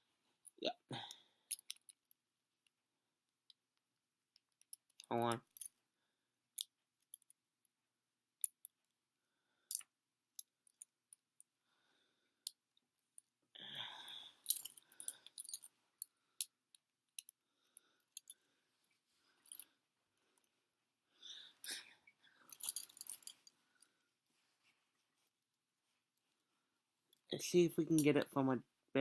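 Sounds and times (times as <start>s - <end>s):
handcuffs clicking: 1.5s - 2.1s, 4.4s - 5.8s, 14.4s - 16.6s.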